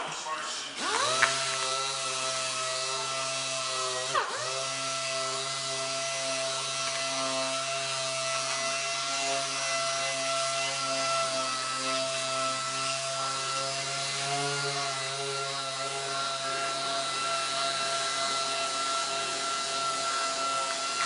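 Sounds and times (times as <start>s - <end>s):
orbital sander whining: 0.8s - 21.0s.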